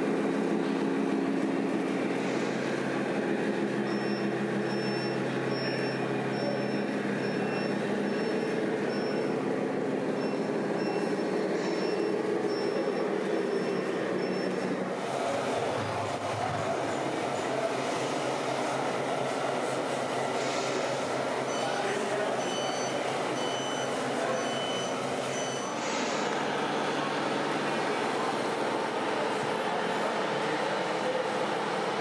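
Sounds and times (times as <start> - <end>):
diesel engine sound: 0.0 - 32.0
reversing beeper: 21.5 - 25.9.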